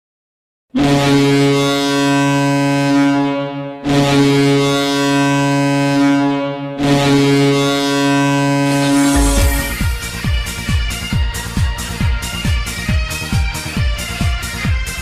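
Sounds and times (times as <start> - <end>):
goal horn blasts: 0.8 - 10.6.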